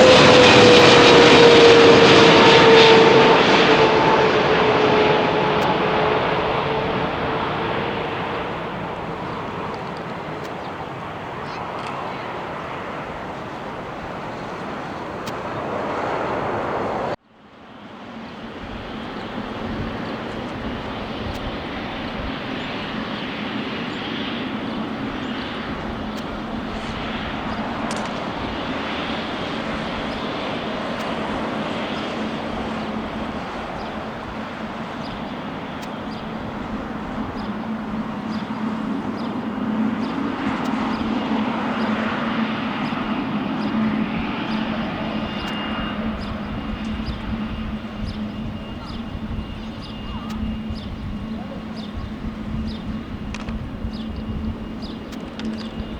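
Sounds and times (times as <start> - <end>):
jet engines roaring: 0.0 - 55.9.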